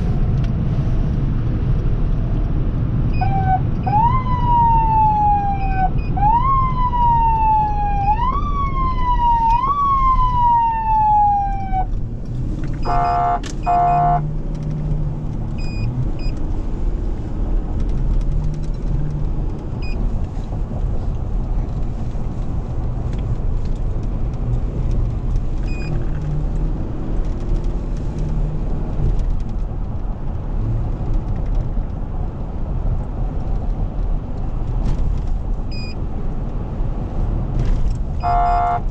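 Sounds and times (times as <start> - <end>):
vehicle rumbling on road: 0.0 - 38.9
electronic siren: 3.2 - 11.9, 12.8 - 14.2, 38.2 - 38.8
short horn blasts: 12.8 - 14.3, 38.2 - 38.9.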